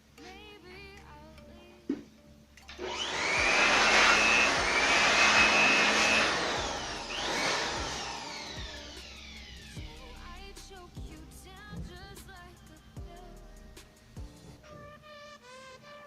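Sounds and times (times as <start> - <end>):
small electric motor whining: 2.7 - 9.8.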